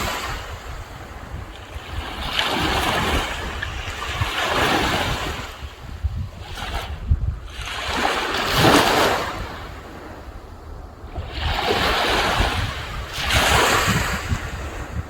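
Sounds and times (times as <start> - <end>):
sea waves breaking on shore: 0.0 - 15.0
wind buffeting microphone: 0.0 - 15.0.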